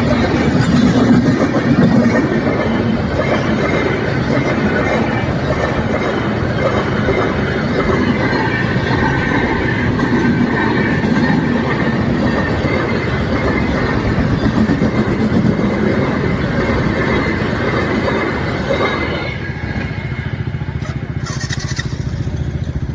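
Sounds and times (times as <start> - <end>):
steady pulsing sound: 0.0 - 22.9
train wheels clattering on rails: 0.0 - 22.9.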